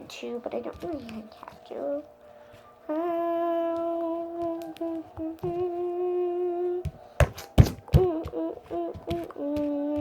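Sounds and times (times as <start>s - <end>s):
girl humming: 2.9s - 7.2s, 7.9s - 10.0s.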